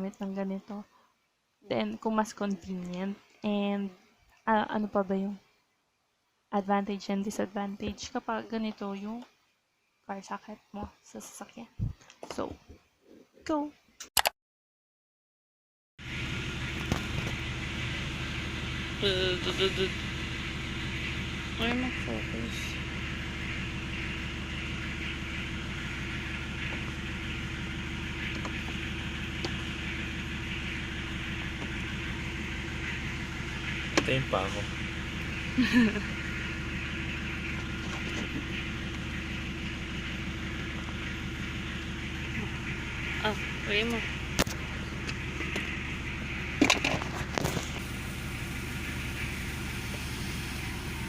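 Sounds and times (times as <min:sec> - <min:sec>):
car engine idling: 0:16.0 - 0:51.0
air-conditioning fan blowing: 0:16.1 - 0:38.7.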